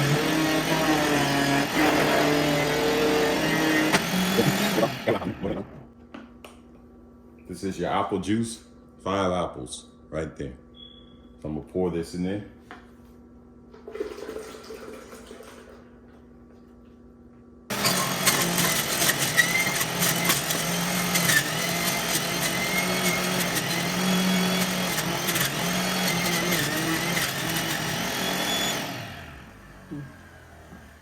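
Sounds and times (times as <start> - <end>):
juicer motor humming: 0.0 - 5.8, 13.7 - 16.2, 17.7 - 31.0.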